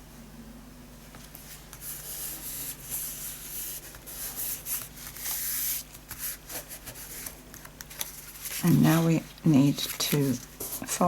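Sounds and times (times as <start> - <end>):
paper rubbed by hand: 1.5 - 7.4.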